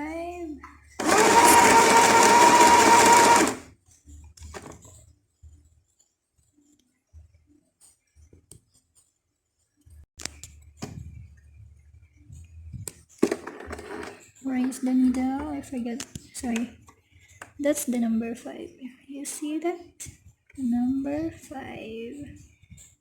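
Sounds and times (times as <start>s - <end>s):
sewing machine whining and stitching: 1.0s - 3.6s.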